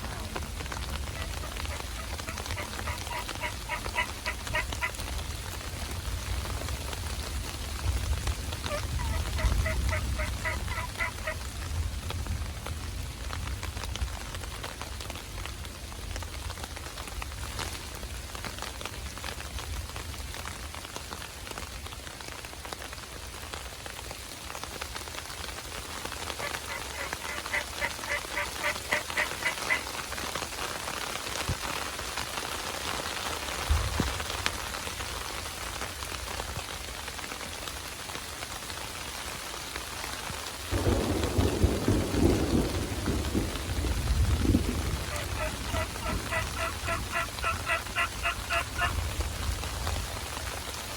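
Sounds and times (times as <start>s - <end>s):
thunder rumble: 0.0s - 13.3s, 40.7s - 50.3s
rain falling: 0.0s - 50.9s
wild turkey yelps: 0.1s - 5.0s, 8.7s - 11.4s, 26.4s - 29.9s, 45.0s - 49.1s.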